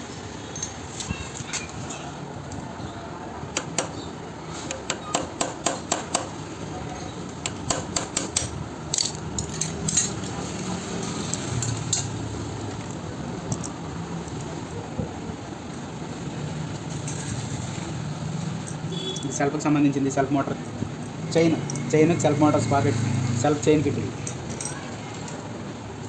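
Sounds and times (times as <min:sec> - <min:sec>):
metal parts and tools clinking: 0:00.0 - 0:02.6, 0:06.9 - 0:13.8, 0:16.8 - 0:19.4, 0:21.0 - 0:22.2, 0:24.1 - 0:25.5.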